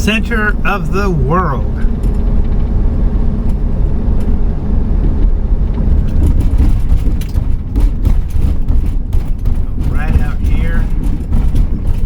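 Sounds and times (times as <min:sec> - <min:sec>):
engine and road rumble: 0:00.0 - 0:12.0
light knocks and rattles: 0:05.7 - 0:12.0.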